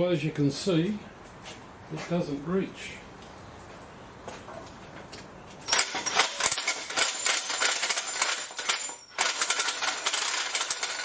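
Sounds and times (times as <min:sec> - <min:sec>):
engine hoist metallic clattering: 0:05.6 - 0:11.0.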